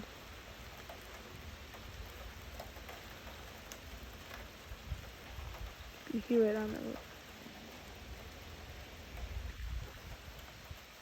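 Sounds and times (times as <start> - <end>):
rain and hail on a roof: 0.0 - 11.0.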